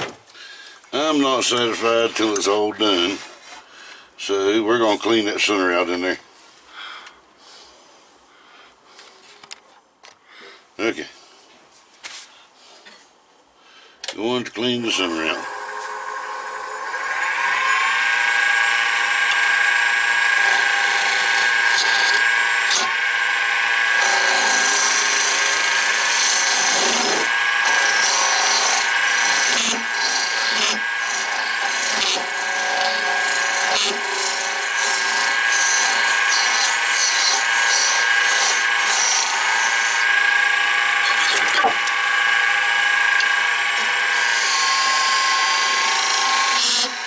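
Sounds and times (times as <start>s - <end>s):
turning tool scraping wood: 1.4s - 3.7s, 17.1s - 47.0s
wood lathe motor whine: 14.9s - 47.0s.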